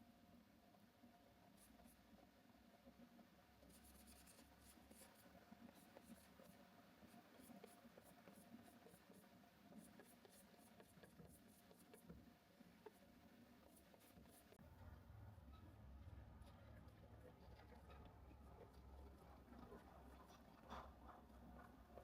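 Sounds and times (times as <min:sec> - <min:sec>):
low room hum: 0:00.0 - 0:22.0
scratchy strokes on canvas: 0:03.6 - 0:14.6.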